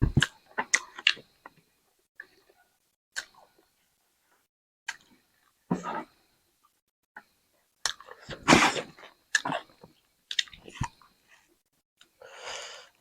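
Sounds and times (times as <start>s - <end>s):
close chewing and biting: 7.8s - 11.0s.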